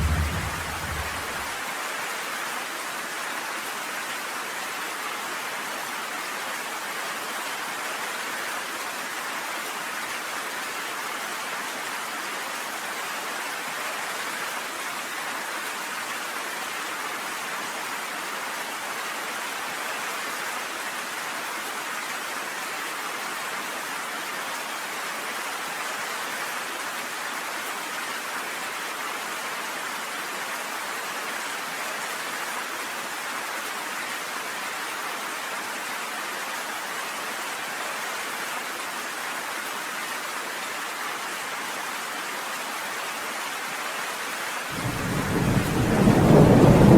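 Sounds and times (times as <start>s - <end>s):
steady rain: 0.0s - 46.9s.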